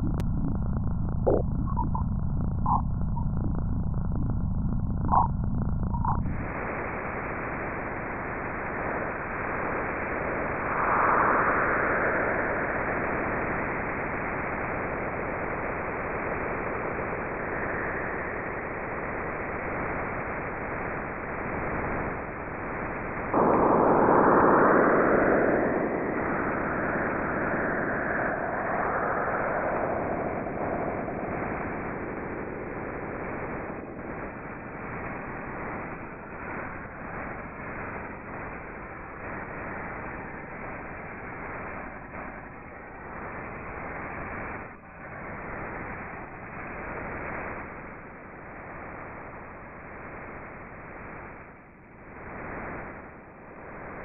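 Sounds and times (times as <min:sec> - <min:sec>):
sweeping whooshing tones: 0:23.4 - 0:32.8.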